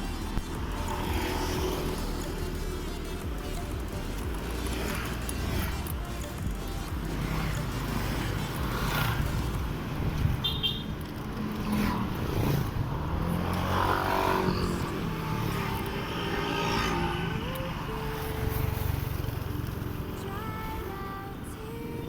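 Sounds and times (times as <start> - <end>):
road traffic passing: 0.0 - 22.0.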